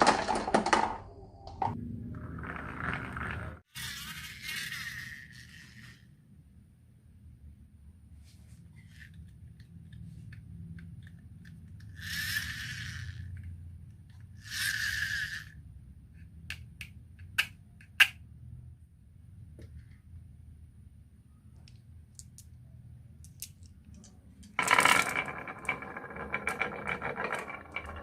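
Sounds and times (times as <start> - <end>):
marbles rolling down wooden run: 0.0 - 1.0, 2.2 - 3.6, 23.4 - 28.0
marbles clacking: 11.8 - 13.4, 23.2 - 28.0.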